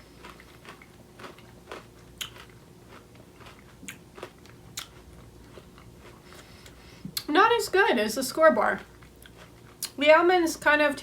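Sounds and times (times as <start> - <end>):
chewing hard candy crunches: 0.2 - 6.2.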